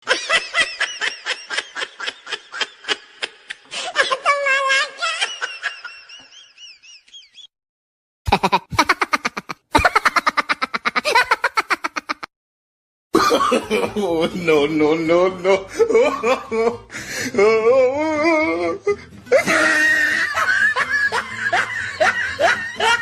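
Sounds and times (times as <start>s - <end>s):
rapid rhythmic laughter: 8.3s - 12.3s, 19.3s - 23.0s.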